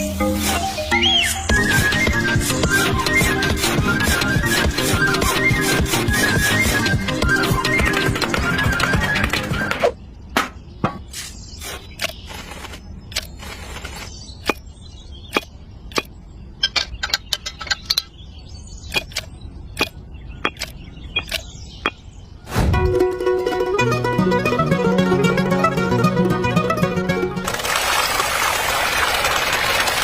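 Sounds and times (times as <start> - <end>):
sharp clicks and taps: 18.9 - 19.9, 20.5 - 22.0.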